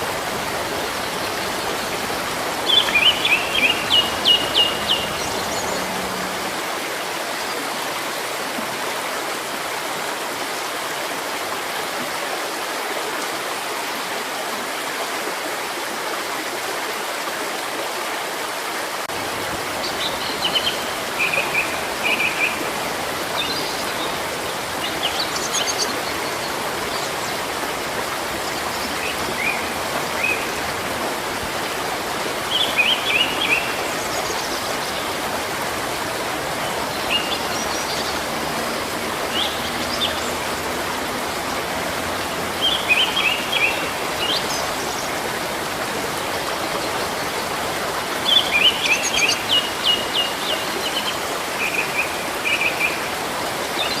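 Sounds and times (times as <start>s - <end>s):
flowing stream: 0.0s - 54.0s.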